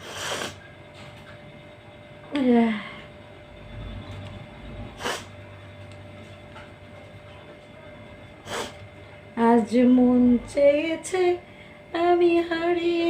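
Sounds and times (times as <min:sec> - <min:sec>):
person sniffing sharply: 0:00.0 - 0:00.6, 0:05.0 - 0:05.3, 0:08.4 - 0:08.8
faint low rumble: 0:01.7 - 0:07.1.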